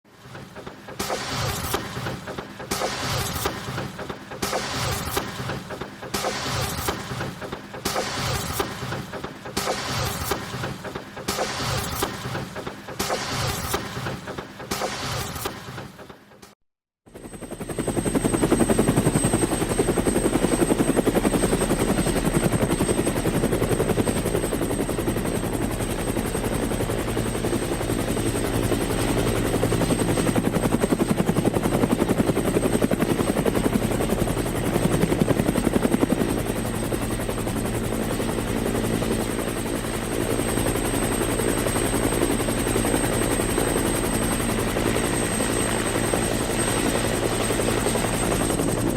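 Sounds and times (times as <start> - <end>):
helicopter rotor blades beating: 0.1 - 16.5, 17.1 - 48.9.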